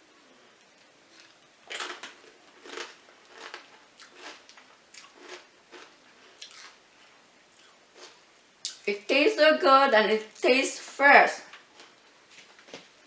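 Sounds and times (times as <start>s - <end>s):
chip crunching while chewing: 1.1s - 6.8s.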